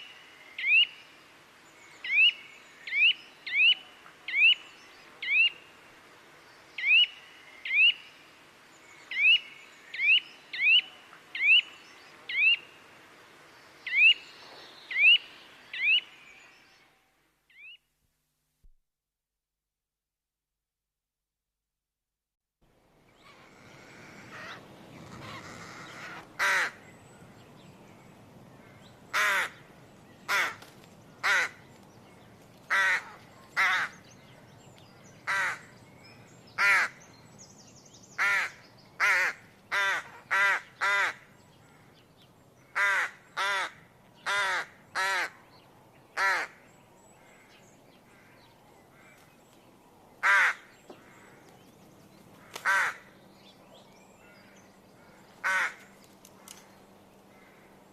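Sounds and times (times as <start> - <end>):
bird calling: 0.0 - 1.0, 2.0 - 5.7, 6.8 - 8.1, 9.0 - 12.7, 13.9 - 17.9, 23.2 - 27.3, 32.7 - 37.3, 46.2 - 49.5, 50.2 - 57.9
faint outdoor background: 0.0 - 57.9.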